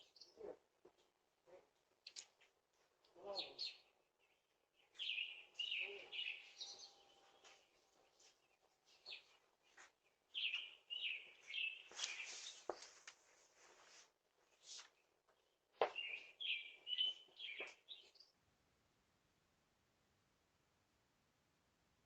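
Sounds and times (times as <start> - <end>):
faint bird chirps: 3.2 - 13.1, 14.5 - 18.4.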